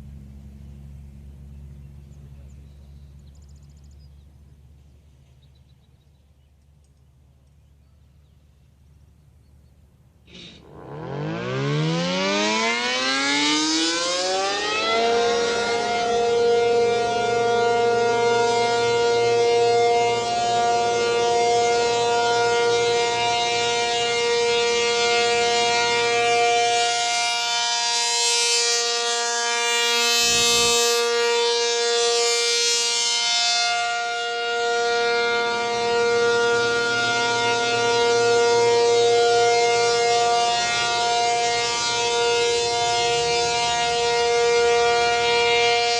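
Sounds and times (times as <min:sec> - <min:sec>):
dual-tone siren: 0:10.3 - 0:45.9.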